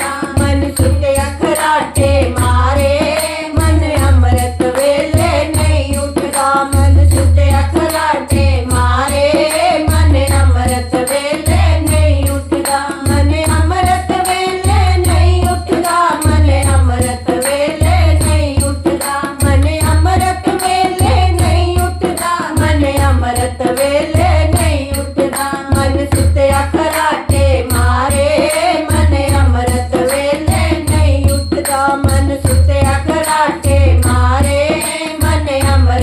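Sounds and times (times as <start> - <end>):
light jingling percussion: 0.0 - 36.0.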